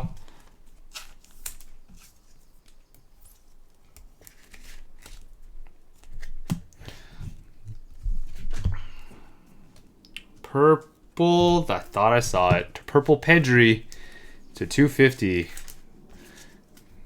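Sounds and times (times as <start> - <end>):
cards sliding and rustling: 0.2 - 7.4, 13.4 - 17.0.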